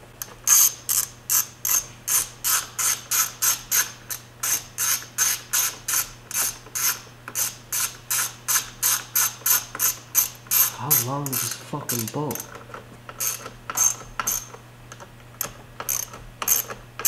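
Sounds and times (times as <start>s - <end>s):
hand ratchet clicking: 0.2s - 17.0s.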